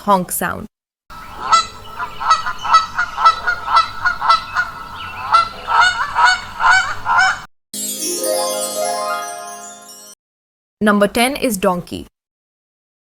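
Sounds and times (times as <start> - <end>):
geese honking: 1.4 - 7.4.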